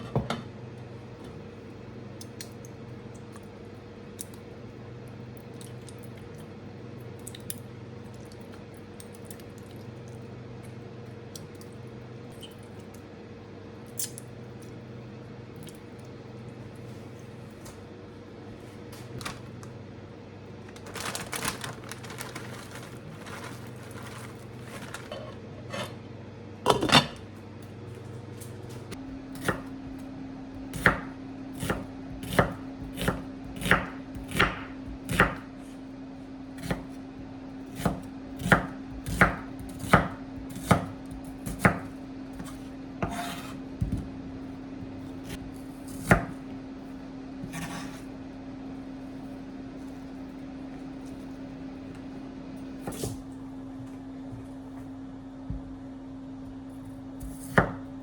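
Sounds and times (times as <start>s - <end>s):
knife chopping on cutting board: 29.3s - 29.8s, 30.7s - 35.5s, 36.6s - 37.0s, 37.8s - 44.1s, 47.4s - 48.0s, 57.2s - 57.9s.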